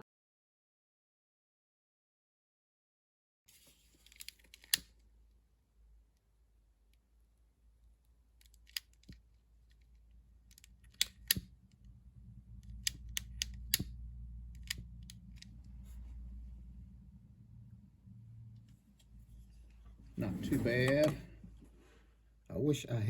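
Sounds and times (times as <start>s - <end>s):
low rumble: 11.5s - 20.8s.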